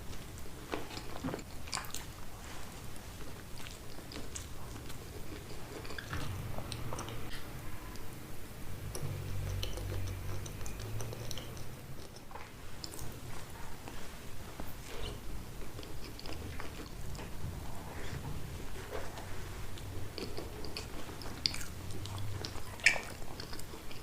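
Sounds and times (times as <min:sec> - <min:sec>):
close-up chewing: 0:00.0 - 0:08.1, 0:08.8 - 0:24.0
mouth clicks and smacks: 0:08.8 - 0:13.2, 0:19.7 - 0:24.0.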